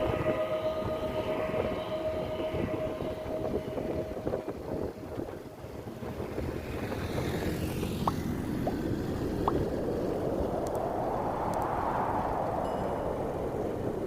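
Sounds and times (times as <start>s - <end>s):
held tone: 0.0s - 6.2s
steady low rumble: 0.0s - 14.0s.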